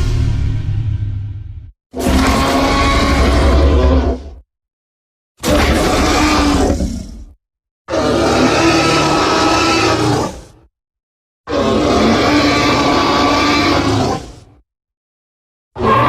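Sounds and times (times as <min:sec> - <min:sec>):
long creature calls: 0:02.0 - 0:04.2, 0:07.9 - 0:10.5, 0:11.5 - 0:14.4.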